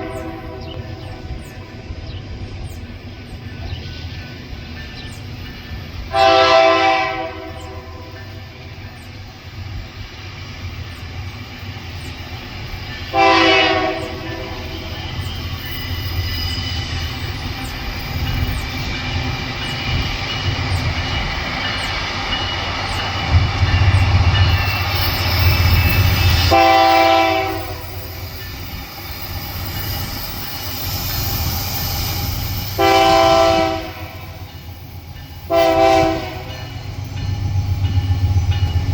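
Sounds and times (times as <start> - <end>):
train horn blasts: 0.0 - 1.6, 6.1 - 8.4, 13.1 - 14.9, 26.4 - 28.1, 32.8 - 34.6, 35.4 - 36.7
locomotive rumble: 0.0 - 38.9.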